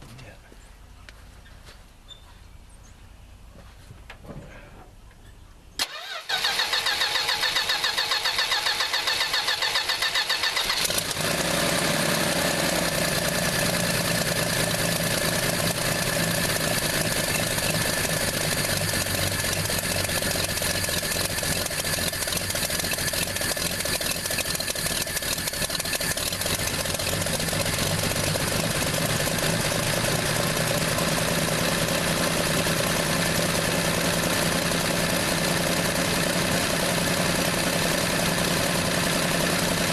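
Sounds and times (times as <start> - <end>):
starter motor cranking: 5.8 - 11.5, 12.8 - 31.0
car engine running: 8.0 - 39.9.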